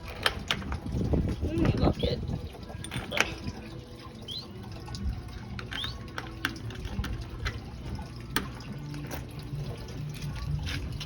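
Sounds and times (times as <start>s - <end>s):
water trickling and dripping: 0.0s - 11.0s
small birds chirping: 1.6s - 2.8s, 4.1s - 4.7s.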